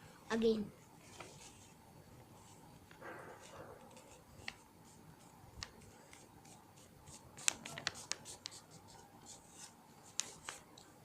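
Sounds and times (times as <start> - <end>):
paper rustling and folding: 1.0 - 1.8, 5.6 - 10.6.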